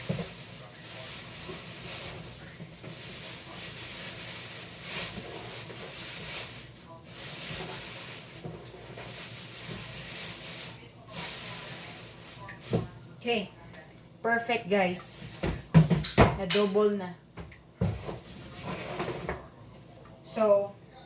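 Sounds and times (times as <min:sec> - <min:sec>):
plastic bags rustling: 0:00.0 - 0:13.0.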